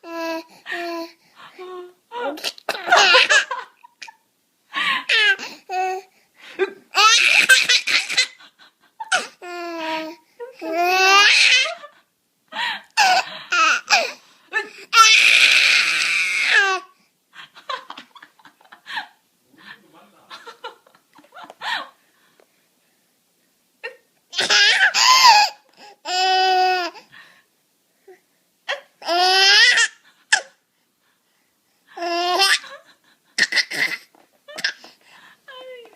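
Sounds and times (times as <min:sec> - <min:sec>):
baby laughing: 0:02.5 - 0:04.2, 0:06.9 - 0:08.4, 0:13.0 - 0:14.1, 0:24.4 - 0:25.7, 0:32.0 - 0:32.8, 0:33.4 - 0:34.8.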